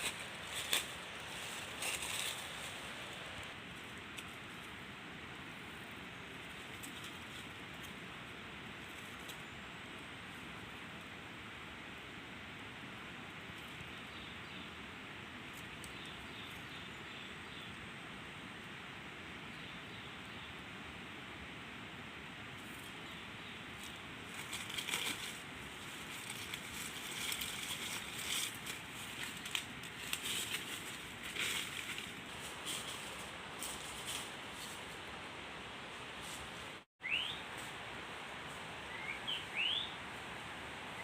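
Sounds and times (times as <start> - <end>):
rustling and crackling: 0.0 - 4.8, 23.8 - 35.2
steady hiss: 0.0 - 16.8.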